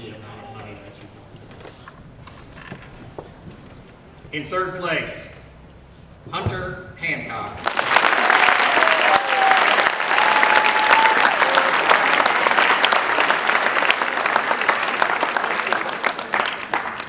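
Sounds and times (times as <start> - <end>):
audience applauding: 7.6 - 17.0.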